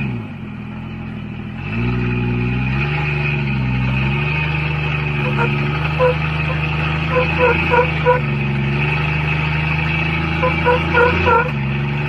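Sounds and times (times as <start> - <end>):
engine revving: 0.0 - 12.0.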